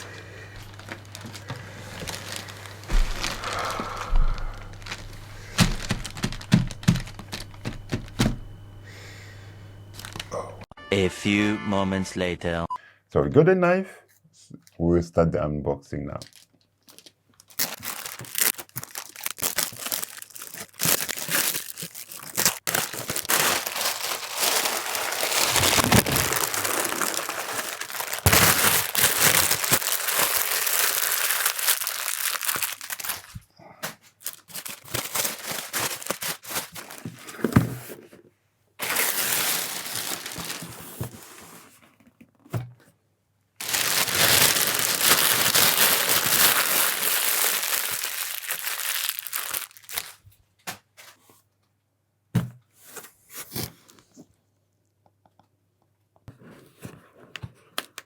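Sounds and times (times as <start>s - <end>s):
packaging wrap crinkling and tearing: 0.0s - 8.4s, 9.9s - 10.4s, 16.2s - 37.6s, 38.8s - 41.6s, 43.6s - 50.4s.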